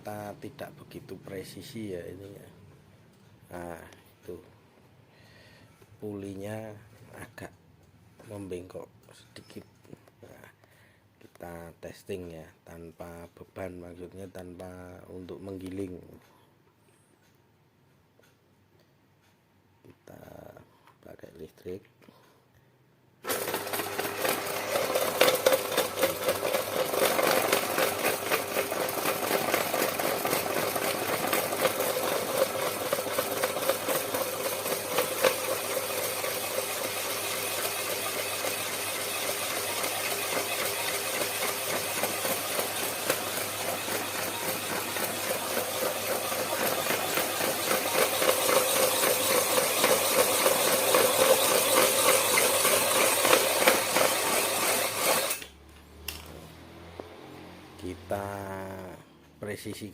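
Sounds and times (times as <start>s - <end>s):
grinder motor humming and rattling: 23.2s - 59.0s.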